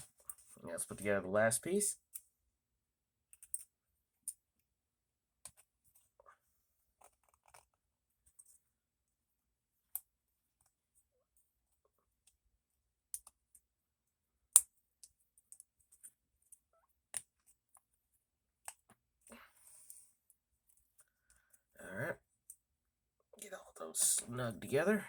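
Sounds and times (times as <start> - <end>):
faint metallic clicks and taps: 3.3 - 4.4, 5.4 - 6.4, 13.1 - 13.7, 14.5 - 17.9.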